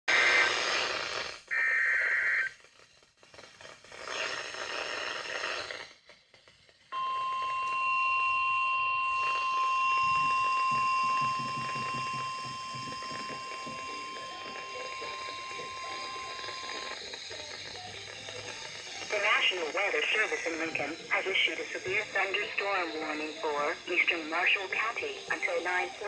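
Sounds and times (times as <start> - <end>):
warbling data burst: 0.1 - 5.9, 7.3 - 26.0
radio hiss: 0.1 - 6.0, 9.1 - 26.0
steady alarm tone: 6.9 - 26.0.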